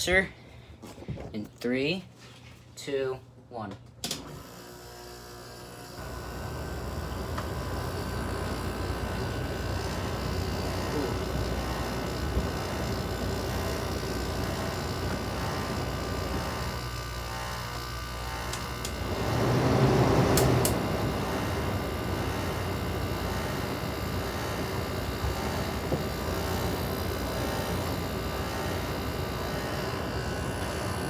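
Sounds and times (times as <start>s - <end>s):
air conditioner humming: 18.5s - 31.0s
air conditioner rush: 18.6s - 26.9s.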